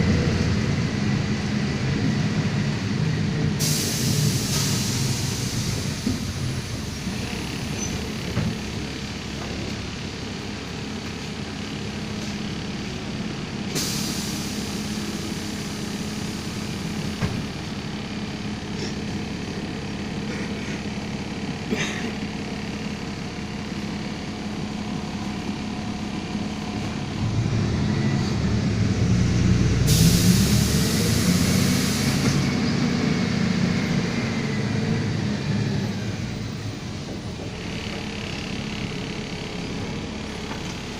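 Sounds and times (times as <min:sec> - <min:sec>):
bus diesel engine running: 0:00.0 - 0:40.9
compressed air hiss: 0:03.6 - 0:06.0, 0:13.8 - 0:15.2, 0:29.8 - 0:32.4.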